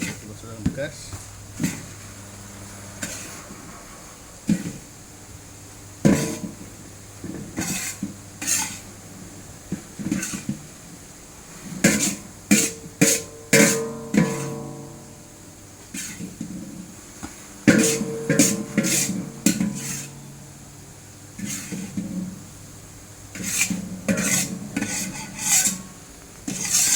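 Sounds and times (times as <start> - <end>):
metal pots and utensils clanking: 1.6 - 2.0, 3.0 - 3.5, 6.0 - 8.9, 10.0 - 10.6, 11.8 - 15.1, 17.7 - 20.3, 21.4 - 22.4, 23.3 - 25.9, 26.5 - 26.9.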